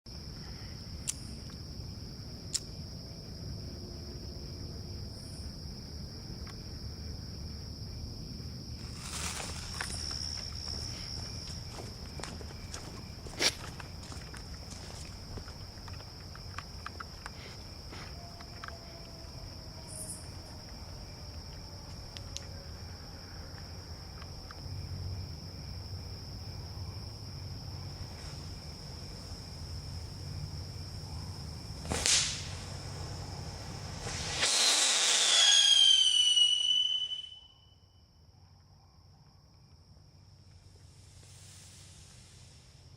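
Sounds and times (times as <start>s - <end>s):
firework crack: 31.7s - 37.5s
firework whistle hissing and crackling: 31.8s - 37.8s, 40.9s - 42.9s.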